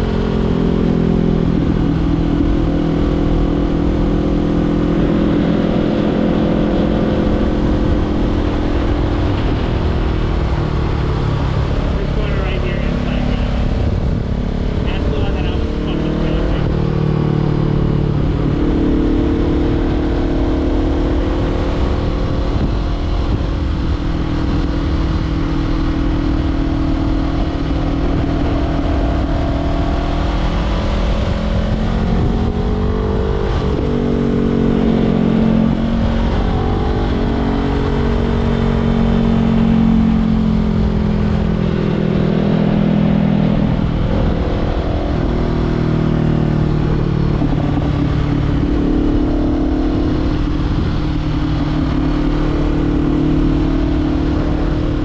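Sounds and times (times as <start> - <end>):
wind noise: 0.0 - 55.0.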